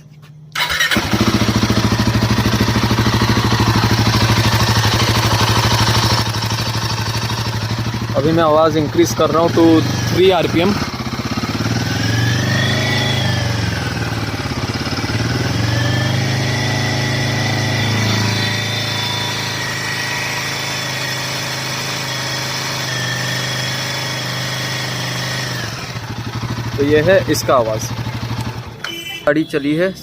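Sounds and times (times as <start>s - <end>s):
engine ticking: 0.5s - 15.6s, 24.9s - 29.0s
motorcycle engine revving: 0.5s - 28.8s.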